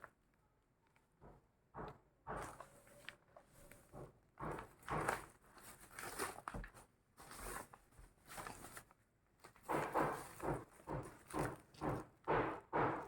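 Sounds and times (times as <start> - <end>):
faint rustling and handling: 2.4 - 11.9.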